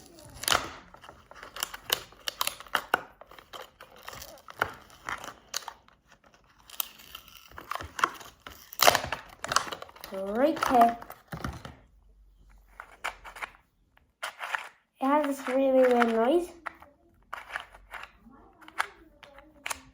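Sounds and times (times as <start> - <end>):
plastic wrapper crinkling and tearing: 0.0 - 11.6.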